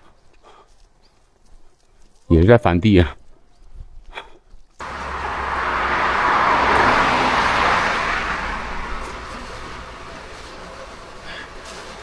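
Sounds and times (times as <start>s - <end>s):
road vehicle passing by: 4.8s - 12.0s.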